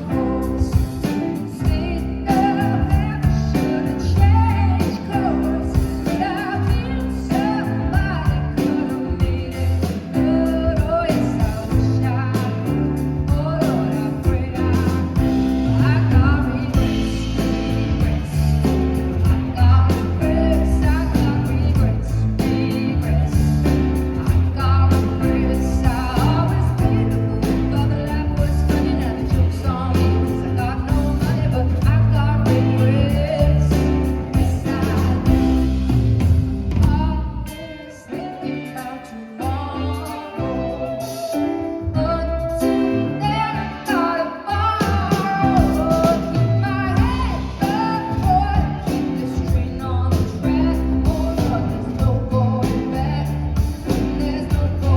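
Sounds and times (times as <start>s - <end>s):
woman singing: 0.0s - 35.9s, 36.7s - 54.9s
guitar and band accompaniment: 0.0s - 54.9s.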